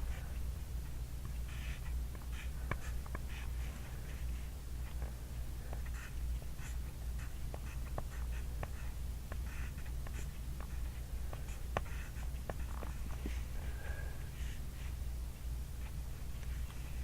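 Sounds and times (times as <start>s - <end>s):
steady low hum: 0.0s - 17.0s
pen writing on paper: 1.5s - 4.4s, 5.7s - 13.4s.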